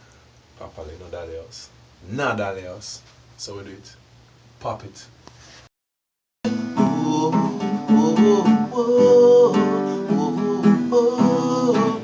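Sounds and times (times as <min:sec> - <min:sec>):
acoustic guitar strumming: 0:06.4 - 0:12.0.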